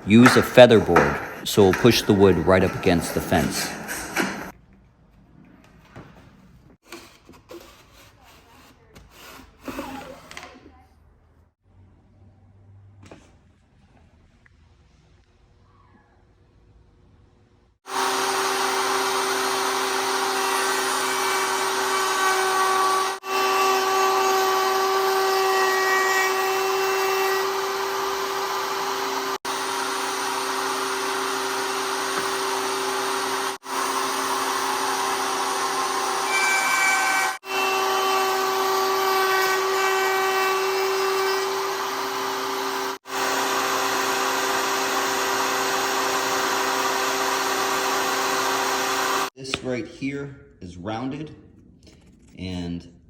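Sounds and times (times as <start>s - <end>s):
router whining: 0.0s - 4.5s, 17.9s - 49.4s.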